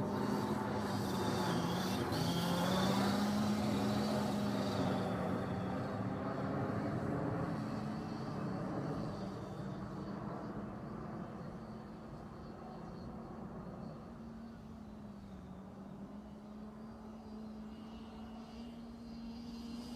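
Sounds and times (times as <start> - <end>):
toy car motor whining: 0.0 - 5.8.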